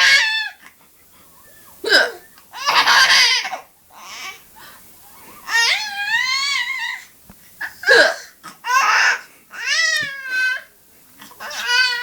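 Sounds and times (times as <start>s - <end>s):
baby squealing: 2.6s - 4.4s, 5.4s - 7.0s, 11.4s - 12.0s
baby vocalising: 5.4s - 12.0s.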